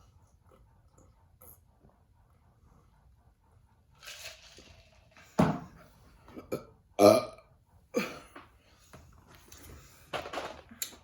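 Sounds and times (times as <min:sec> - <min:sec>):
person burping loudly: 0:06.3 - 0:08.2.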